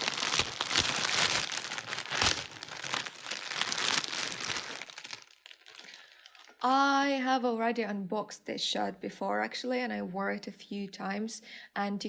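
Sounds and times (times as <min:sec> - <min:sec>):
packaging crinkling: 0:00.0 - 0:06.6.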